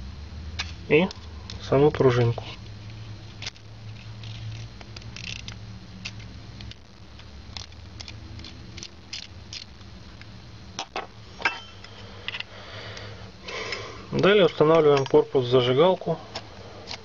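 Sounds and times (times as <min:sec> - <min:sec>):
low steady hum: 0:00.0 - 0:17.0
clicks and scrapes of metal parts: 0:03.3 - 0:06.8, 0:07.5 - 0:12.5, 0:16.3 - 0:17.0.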